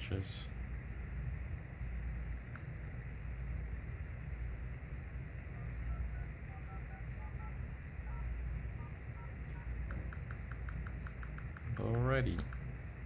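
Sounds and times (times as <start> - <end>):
rapid keypress clicks: 9.4 - 12.7.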